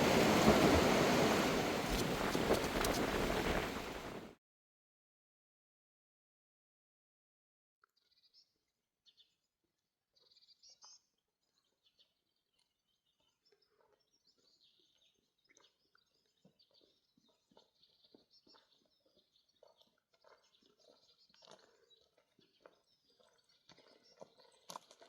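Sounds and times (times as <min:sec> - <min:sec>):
small birds chirping: 0:12.9 - 0:25.0.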